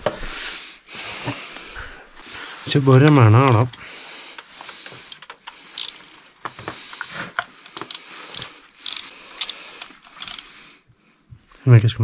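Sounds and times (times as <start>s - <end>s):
metal tool handling: 4.4s - 6.1s, 6.9s - 10.5s
ratchet wrench clicking: 5.1s - 6.0s, 7.8s - 10.5s.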